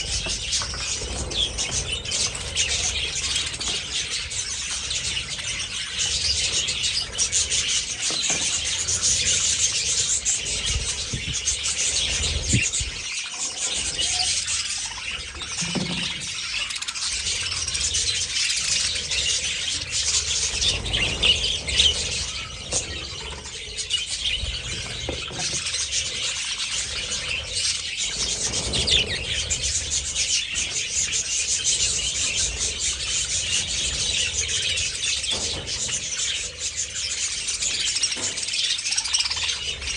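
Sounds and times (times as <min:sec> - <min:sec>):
budgerigars chattering and chirping: 0:00.0 - 0:39.9.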